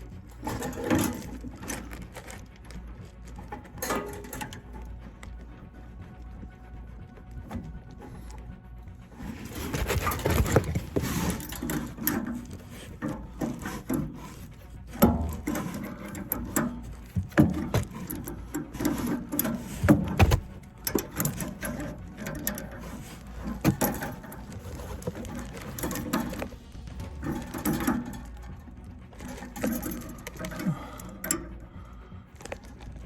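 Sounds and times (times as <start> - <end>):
tools clattering on metal parts: 0.0 - 5.5, 9.1 - 33.0
heavy thumps: 19.3 - 21.0.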